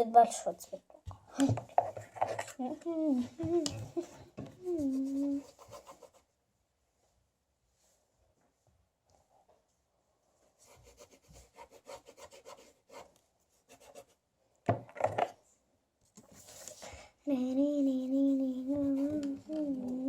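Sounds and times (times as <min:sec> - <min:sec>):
paintbrush rubbing on paper: 0:04.6 - 0:06.3, 0:10.6 - 0:14.2.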